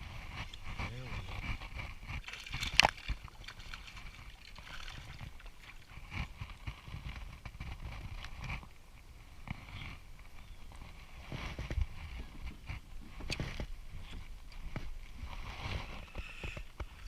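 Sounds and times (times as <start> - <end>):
water sloshing: 0.0 - 8.7.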